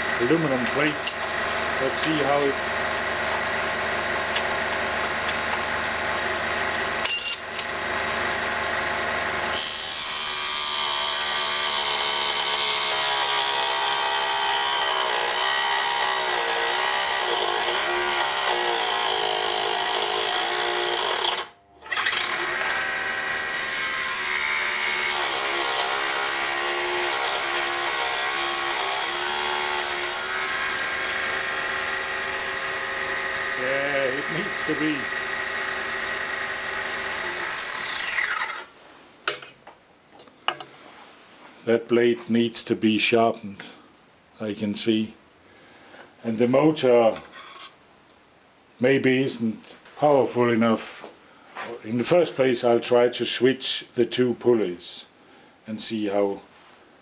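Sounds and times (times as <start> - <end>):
table saw cutting wood: 0.0 - 38.7.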